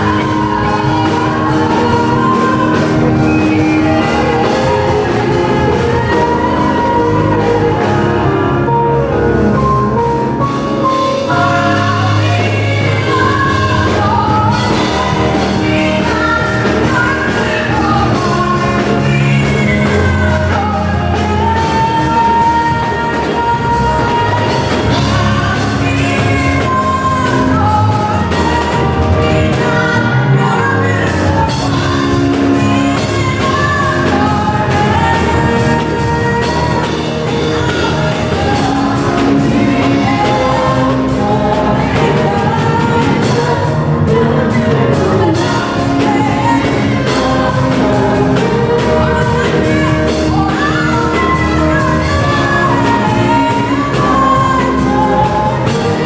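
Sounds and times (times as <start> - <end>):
steady drum beat: 0.0 - 30.0, 31.1 - 56.0
people singing: 0.0 - 56.0
worship band playing: 0.0 - 56.0.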